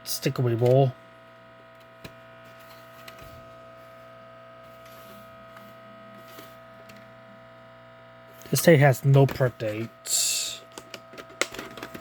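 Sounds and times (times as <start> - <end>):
electrical hum: 0.0 - 12.0.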